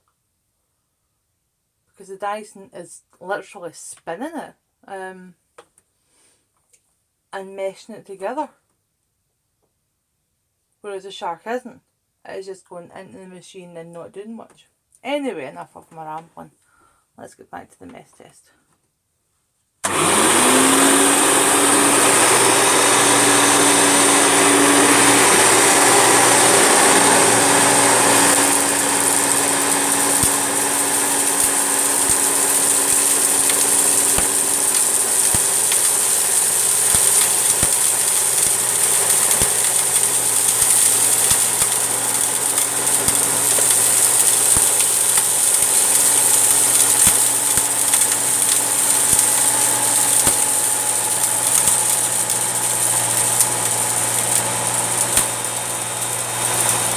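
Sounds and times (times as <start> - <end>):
vacuum cleaner whining: 19.8 - 56.9
litter granules clicking: 19.9 - 56.9.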